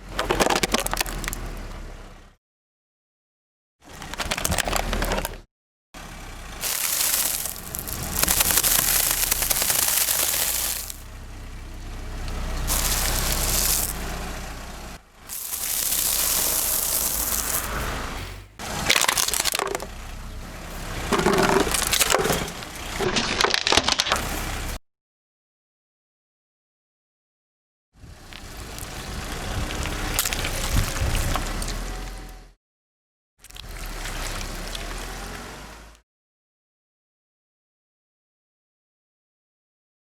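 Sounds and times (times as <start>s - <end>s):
tyres crushing crunching objects: 0.0s - 1.6s, 3.9s - 5.4s, 6.5s - 11.1s, 12.2s - 20.0s, 20.7s - 24.7s.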